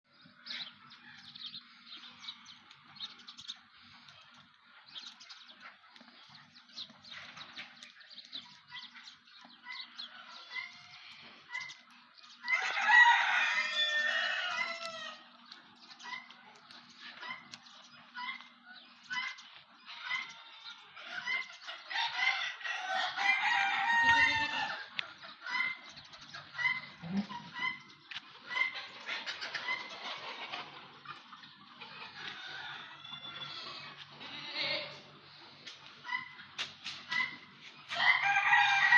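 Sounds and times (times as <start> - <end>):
chickens clucking: 0.1 - 38.9
rooster crowing: 12.5 - 15.2, 22.0 - 24.9, 32.2 - 34.0, 37.9 - 38.9.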